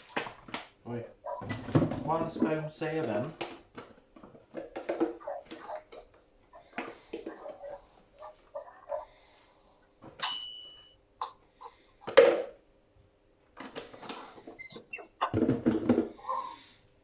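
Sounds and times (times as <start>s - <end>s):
metal striking dish: 10.2s - 10.8s
kitchenware clinking: 10.2s - 11.0s.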